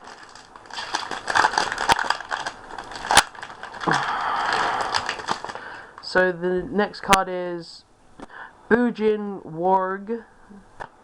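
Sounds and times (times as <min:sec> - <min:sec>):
foil pack tearing and crinkling: 0:00.0 - 0:06.0.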